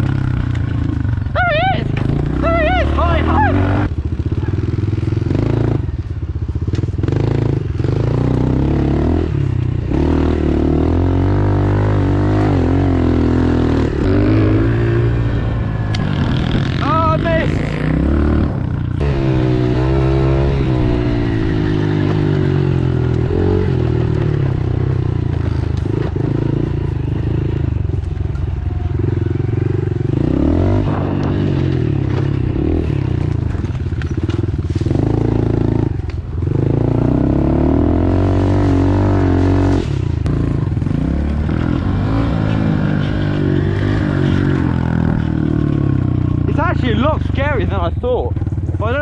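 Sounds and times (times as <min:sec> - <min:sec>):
pit bike engine revving: 0:00.0 - 0:06.0, 0:06.8 - 0:49.0.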